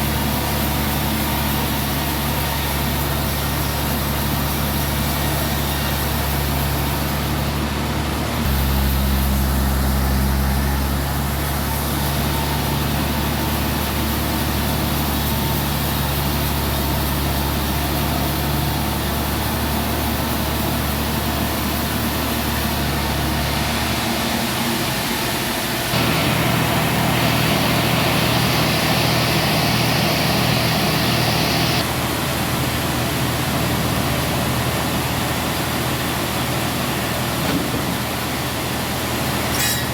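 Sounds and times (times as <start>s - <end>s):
machinery engine drone: 0.0s - 32.0s
high hiss: 8.5s - 15.8s.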